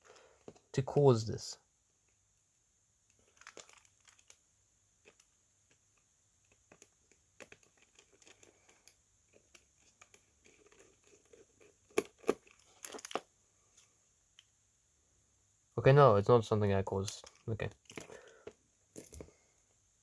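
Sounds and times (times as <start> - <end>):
light crinkling: 3.1 - 4.4, 5.0 - 14.5.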